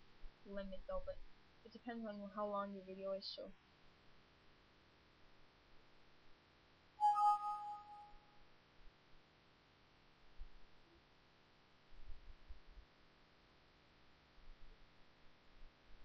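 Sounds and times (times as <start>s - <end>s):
electronic bell chime: 7.0s - 8.1s.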